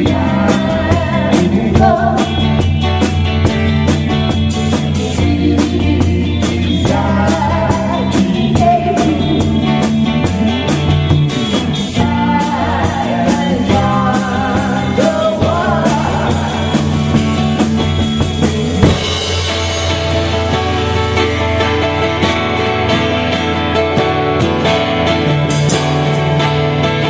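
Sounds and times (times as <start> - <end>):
person singing: 0.0 - 2.6, 4.9 - 10.4, 12.0 - 17.2
bass guitar: 0.0 - 27.0
drums: 0.0 - 27.0
electric guitar: 0.0 - 27.0.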